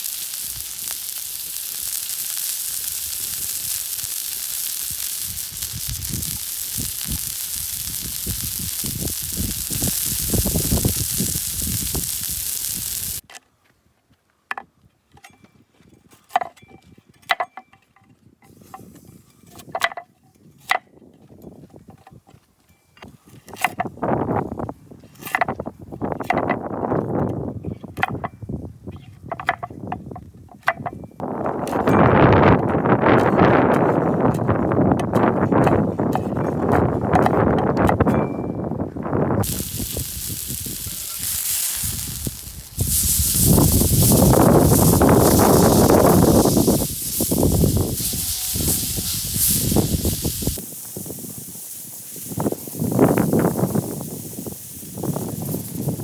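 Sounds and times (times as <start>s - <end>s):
meat sizzling: 0.0s - 13.2s, 39.4s - 56.0s.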